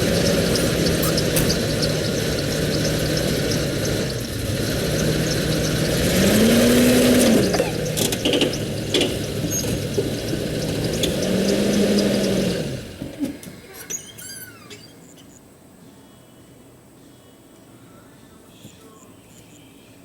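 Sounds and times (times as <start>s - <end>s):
bus engine revving: 0.0s - 14.9s.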